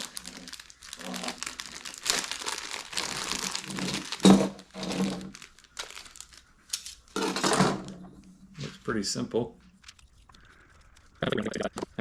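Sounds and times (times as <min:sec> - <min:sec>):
packaging crinkling: 0:00.0 - 0:08.0.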